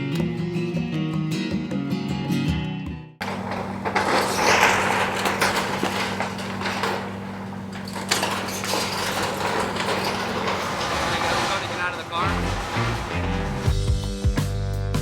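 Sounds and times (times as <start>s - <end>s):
metal and glass crunching: 3.2s - 13.8s
heavy machine engine running: 3.2s - 14.1s.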